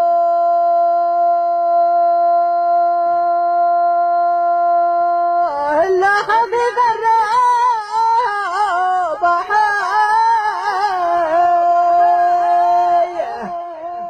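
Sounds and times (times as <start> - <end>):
man singing unaccompanied: 5.1 - 14.0.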